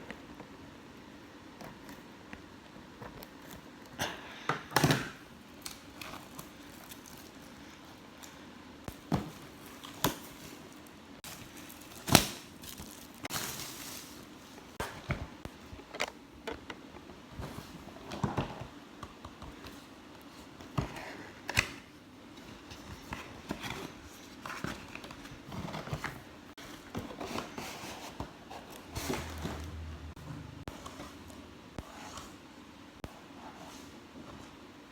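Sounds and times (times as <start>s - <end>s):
plastic packaging crinkling: 5.5s - 14.8s.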